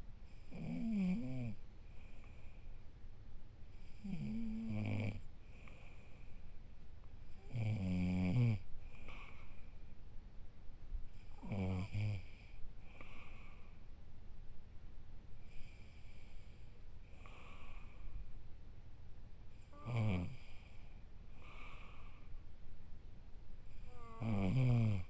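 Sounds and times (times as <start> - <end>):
quiet breathing: 0.0 - 14.3, 15.1 - 18.6, 19.4 - 25.0
snoring: 0.4 - 1.6, 3.8 - 5.8, 7.4 - 9.4, 11.2 - 13.6, 19.6 - 20.8, 23.7 - 25.0.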